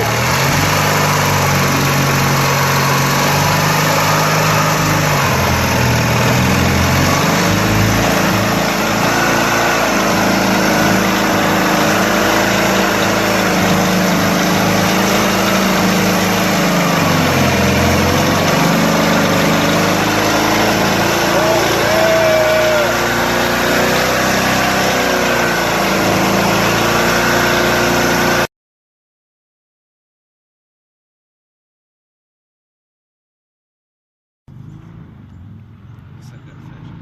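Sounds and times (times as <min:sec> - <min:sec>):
boat motor revving: 0:00.0 - 0:28.5.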